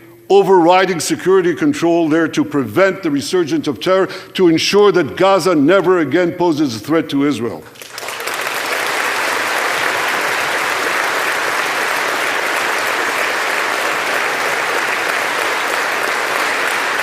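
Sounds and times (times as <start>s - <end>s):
large audience applauding: 7.8s - 17.0s.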